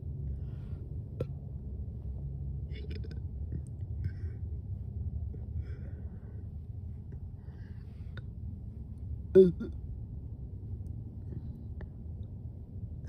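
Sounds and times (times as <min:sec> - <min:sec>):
low rumble in car cabin: 0:00.0 - 0:13.0
faint breaths: 0:00.1 - 0:09.0
soft mouth noises: 0:02.7 - 0:04.4, 0:09.4 - 0:09.8.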